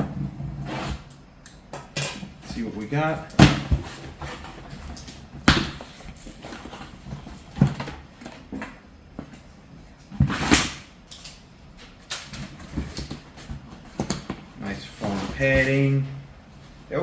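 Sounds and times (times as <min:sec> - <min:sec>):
foam packing rustling: 0:09.2 - 0:17.0.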